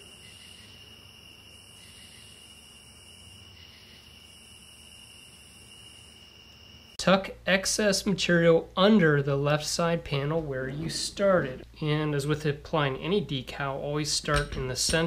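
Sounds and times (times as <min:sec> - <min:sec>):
insect buzz: 0:00.0 - 0:07.0
insect trill: 0:00.0 - 0:07.0
low steady hum: 0:07.0 - 0:15.0.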